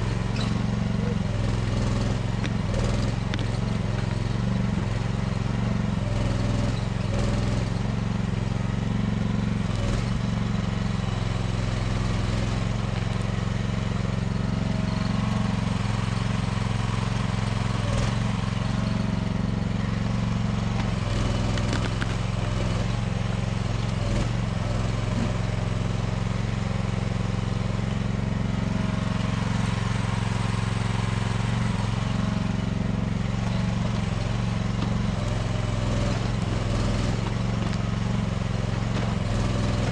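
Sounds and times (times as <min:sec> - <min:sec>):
small excavator engine droning: 0:00.0 - 0:39.9.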